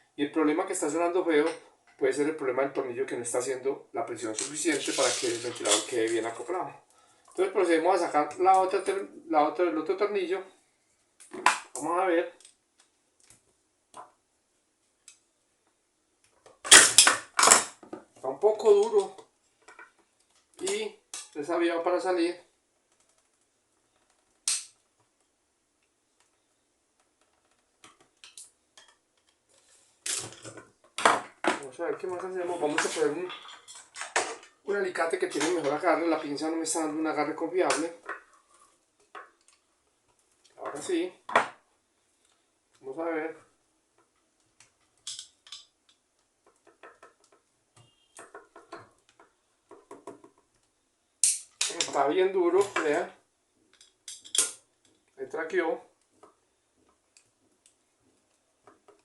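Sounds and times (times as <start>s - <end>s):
pliers clicking and scraping on screw: 24.2s - 24.8s, 44.6s - 47.4s, 50.5s - 52.0s
metal pliers clicking: 51.2s - 52.0s.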